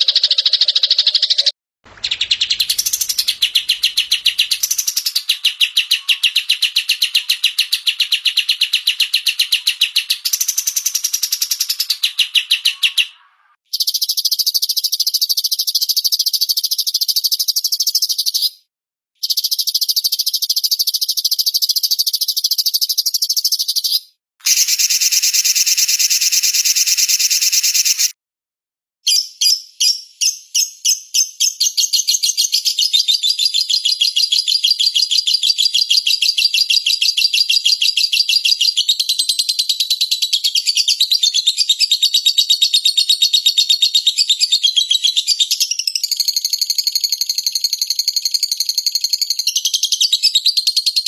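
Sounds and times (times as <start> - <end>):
quick rising bird notes: 1.9 - 4.8
songbird high-pitched trill: 19.2 - 28.2.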